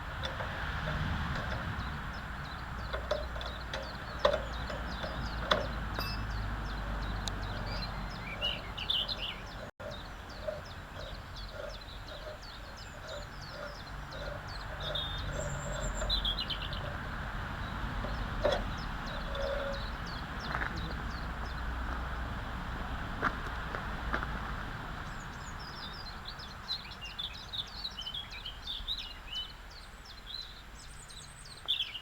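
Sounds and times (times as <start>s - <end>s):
soft regular ticking: 0.0s - 20.8s
small birds chirping: 0.0s - 22.2s, 25.0s - 32.0s.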